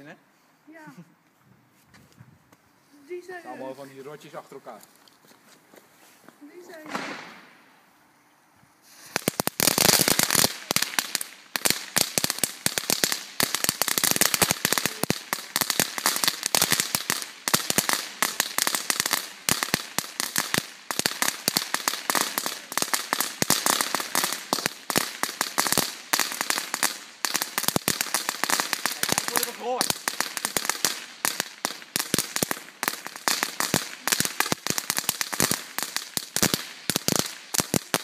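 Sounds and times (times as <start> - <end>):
crackling firecracker string: 8.8 - 38.0.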